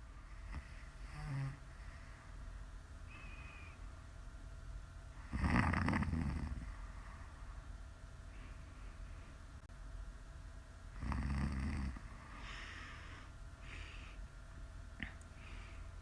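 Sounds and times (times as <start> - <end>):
woman snoring: 0.5 - 1.6, 5.2 - 6.7, 11.0 - 12.8.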